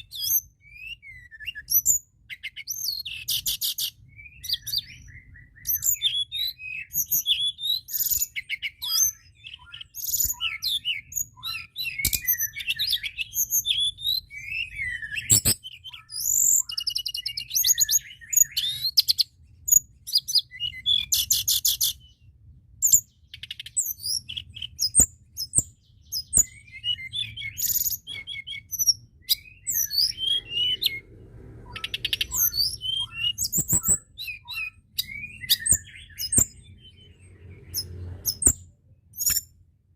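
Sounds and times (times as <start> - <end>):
songbird singing trills: 0.0 - 39.9.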